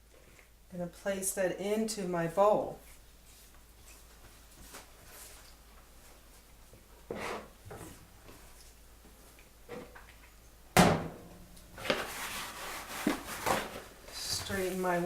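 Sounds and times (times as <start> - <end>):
rustling and scraping: 2.8 - 10.0, 11.8 - 15.0.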